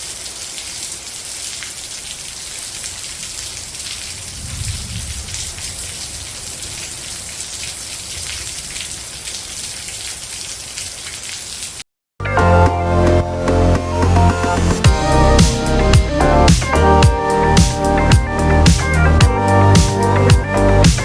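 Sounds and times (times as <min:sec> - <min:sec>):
rain pattering: 0:00.0 - 0:11.8.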